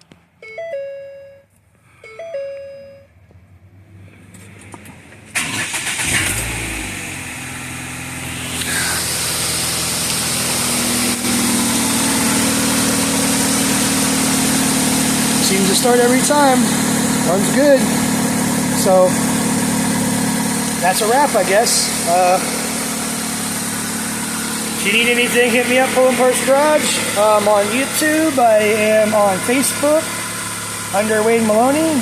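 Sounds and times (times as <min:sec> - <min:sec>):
chime tones: 0:00.4 - 0:03.2
car engine cranking and idling: 0:02.1 - 0:32.0.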